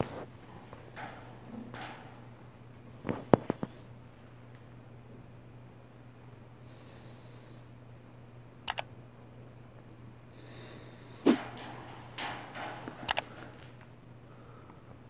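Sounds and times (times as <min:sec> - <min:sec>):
steady low hum: 0:00.0 - 0:15.0
sharp clicks: 0:08.7 - 0:08.9, 0:13.0 - 0:13.4.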